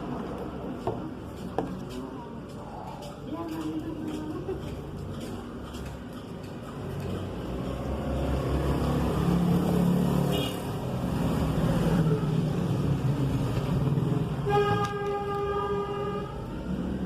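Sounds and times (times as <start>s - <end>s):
vehicle horn: 10.3s - 10.7s, 14.4s - 16.4s.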